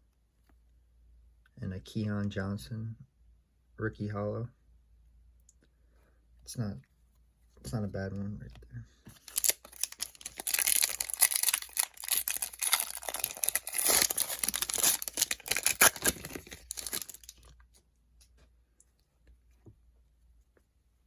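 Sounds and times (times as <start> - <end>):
foil wrapper tearing and crinkling: 9.2 - 17.5.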